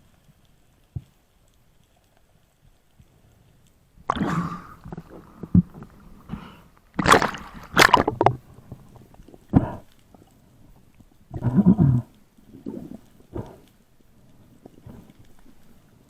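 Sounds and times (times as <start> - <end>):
water splashing and gurgling: 4.0 - 10.4.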